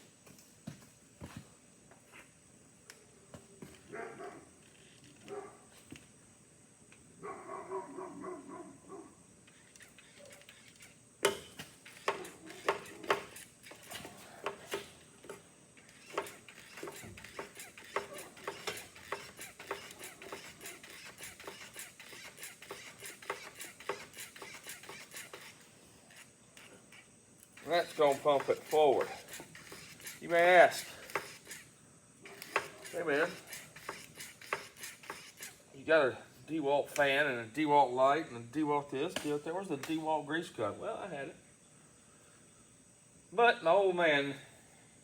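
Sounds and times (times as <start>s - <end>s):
sharp clicks and knocks: 9.7s - 26.7s, 27.4s - 31.6s, 32.3s - 35.6s.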